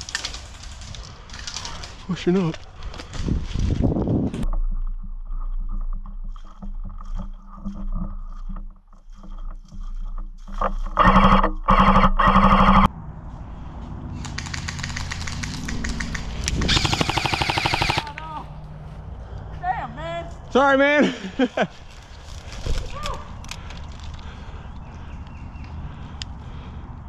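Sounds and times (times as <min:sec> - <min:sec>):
airsoft rifle rapid bursts: 0:14.2 - 0:18.1
faint rapid airsoft fire: 0:14.2 - 0:18.1.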